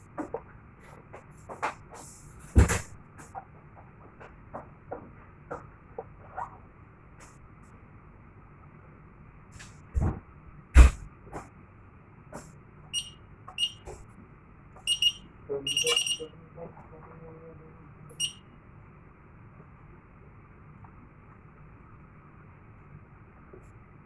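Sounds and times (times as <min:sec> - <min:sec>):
high-pitched electronic alarm beeps: 0:13.0 - 0:13.9, 0:14.9 - 0:16.3, 0:18.1 - 0:18.4.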